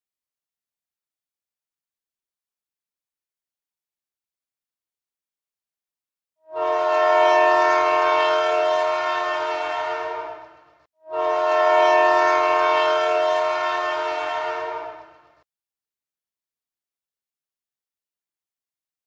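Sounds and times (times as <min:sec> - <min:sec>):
train horn blasts: 0:06.4 - 0:15.4.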